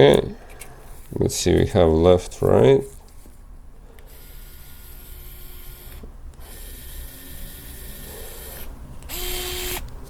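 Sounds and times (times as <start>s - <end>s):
electric screwdriver whirring: 4.1s - 9.9s.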